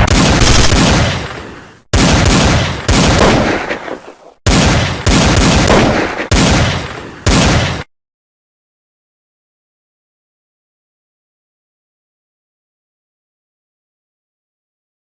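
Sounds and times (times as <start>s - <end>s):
loud gunshots: 0.0s - 7.9s.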